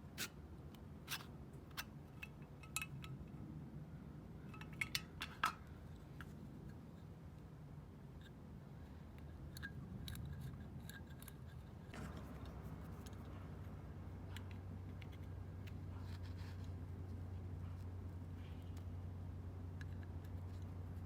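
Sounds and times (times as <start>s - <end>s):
steady low hum: 0.0s - 21.0s
small metal parts clicking: 1.1s - 3.2s, 4.4s - 5.7s.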